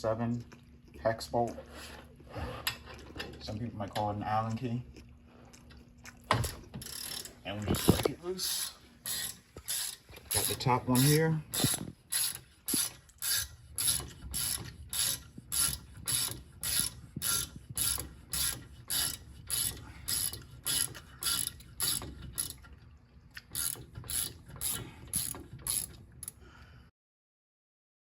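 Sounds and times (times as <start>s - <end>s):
ratchet wrench clicking: 6.8s - 22.6s, 23.6s - 26.4s.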